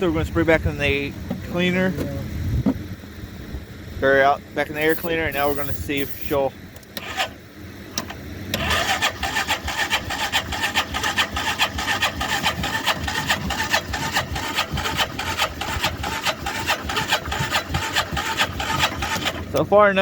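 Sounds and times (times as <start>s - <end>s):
electric starter cranking engine: 4.7s - 19.7s.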